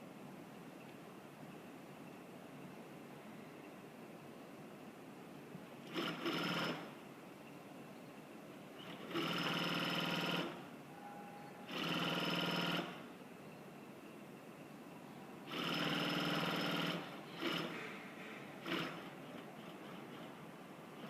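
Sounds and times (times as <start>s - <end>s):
sewing machine running: 5.9s - 6.9s, 8.9s - 10.6s, 11.7s - 13.0s, 15.5s - 17.8s, 18.6s - 20.4s.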